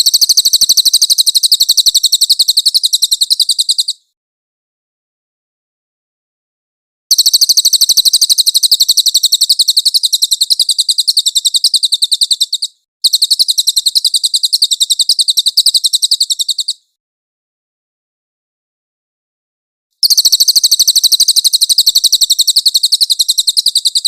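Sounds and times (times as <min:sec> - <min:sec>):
bird singing high-pitched trill: 0:00.0 - 0:04.1, 0:07.1 - 0:16.9, 0:20.0 - 0:24.0.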